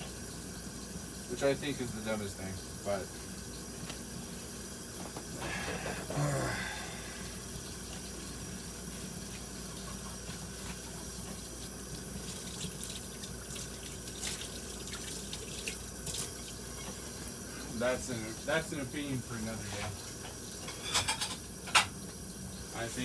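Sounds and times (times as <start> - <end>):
faucet running: 0.0 - 23.0
dishware clinking: 20.6 - 22.0.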